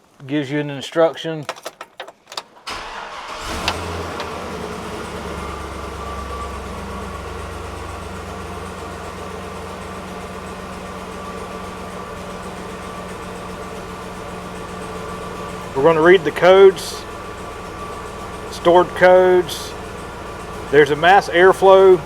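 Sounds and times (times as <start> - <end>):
engine cranking: 1.4 - 6.4
engine idling: 1.5 - 22.0.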